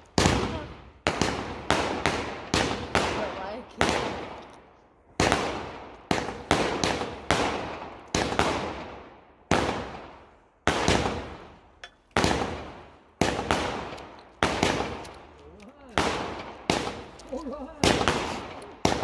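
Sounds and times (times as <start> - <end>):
fireworks bangs: 15.9 - 19.0.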